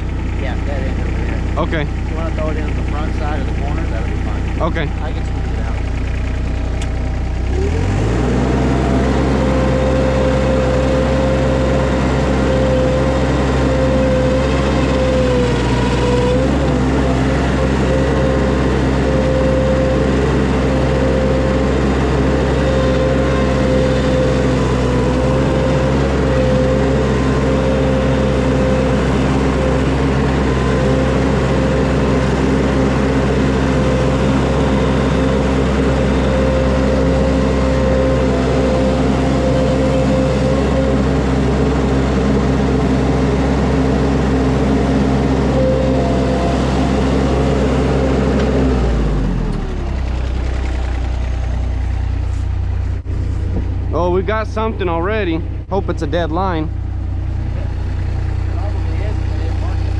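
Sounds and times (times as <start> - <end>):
diesel engine revving: 0.0 - 59.9
high-pitched whine: 52.8 - 57.8.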